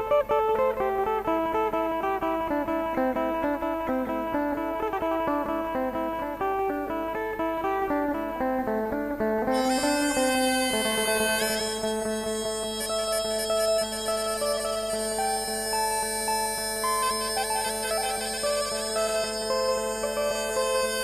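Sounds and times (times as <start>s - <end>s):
plucked lute melody: 0.0s - 21.0s
reedy wind instrument: 9.4s - 21.0s.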